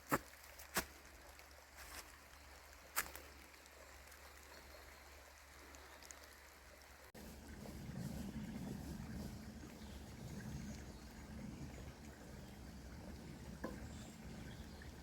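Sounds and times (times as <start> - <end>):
footsteps on woodland path: 0.0 - 3.5.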